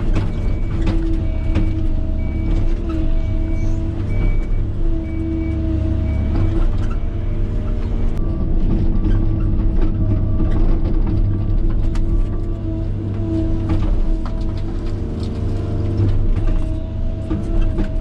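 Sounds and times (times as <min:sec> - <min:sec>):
diesel machinery rumbling: 0:00.0 - 0:18.0
reversing alarm beeping: 0:00.1 - 0:08.4.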